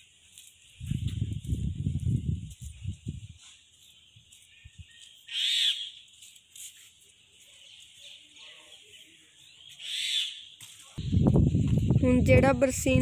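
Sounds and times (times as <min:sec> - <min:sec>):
high-pitched bird chorus: 0:02.6 - 0:12.0
loud bird calls: 0:03.8 - 0:06.2, 0:07.2 - 0:11.2.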